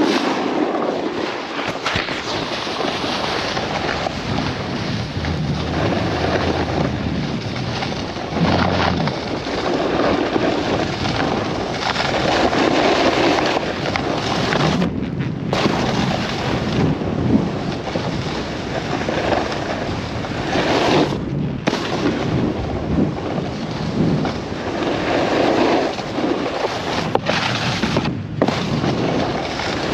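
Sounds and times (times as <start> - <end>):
snowboard scraping over snow: 0.0 - 29.9
wind on microphone: 0.0 - 29.9.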